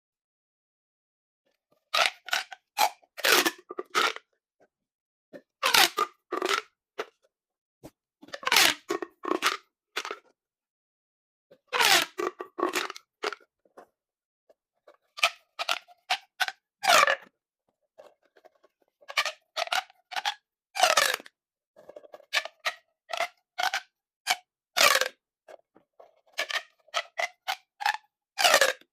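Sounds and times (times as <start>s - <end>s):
plastic pop tubes popping: 5.6s - 7.1s, 11.8s - 13.4s, 19.1s - 21.3s, 22.3s - 25.2s, 26.3s - 28.8s.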